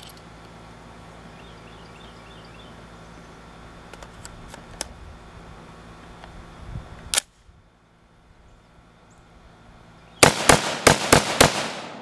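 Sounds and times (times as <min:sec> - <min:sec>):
rifle shots echoing: 0:10.2 - 0:12.0.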